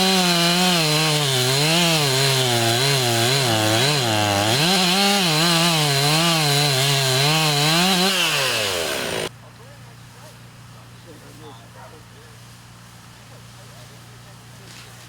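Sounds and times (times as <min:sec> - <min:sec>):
chainsaw running hard: 0:00.0 - 0:09.3.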